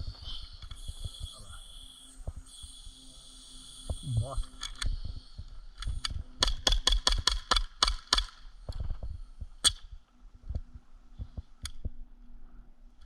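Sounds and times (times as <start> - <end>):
airsoft gun shots: 6.4 - 8.4.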